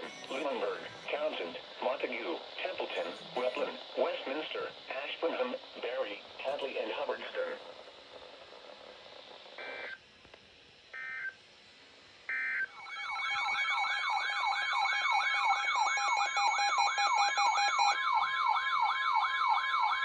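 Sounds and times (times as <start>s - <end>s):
warbling electronic alert siren: 12.3s - 20.0s.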